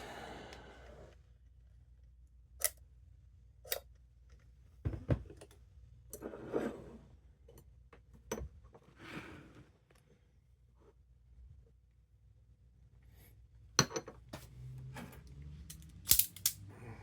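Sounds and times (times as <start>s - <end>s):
metal lock picking clicks: 15.7s - 16.6s.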